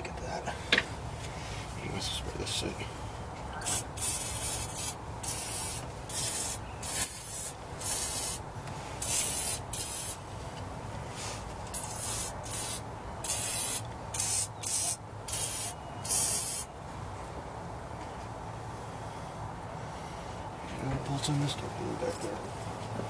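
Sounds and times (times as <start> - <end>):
aerosol can spraying in bursts: 3.6 - 8.4, 9.0 - 10.2, 11.8 - 16.7.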